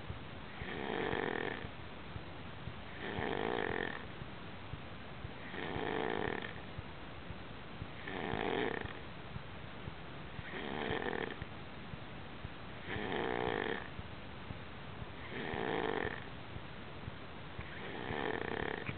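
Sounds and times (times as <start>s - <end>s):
person snoring: 0.5s - 1.7s, 2.9s - 4.0s, 5.4s - 6.6s, 8.0s - 9.0s, 10.4s - 11.4s, 12.9s - 13.9s, 15.2s - 16.2s, 17.7s - 18.9s.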